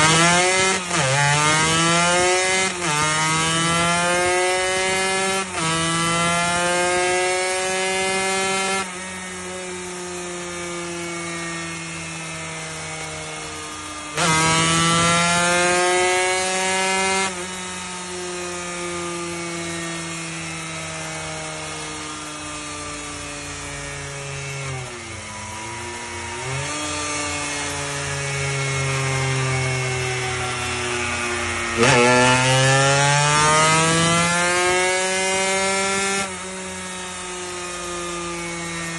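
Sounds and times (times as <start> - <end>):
racing motorcycle engine revving: 0.0 - 38.9.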